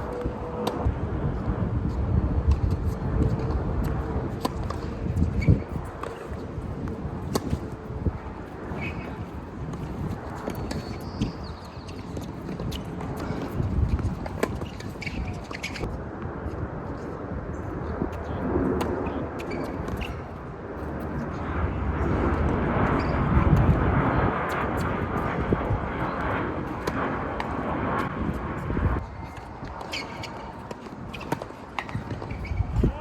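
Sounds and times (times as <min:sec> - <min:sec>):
low rumbling noise: 0:20.5 - 0:29.1.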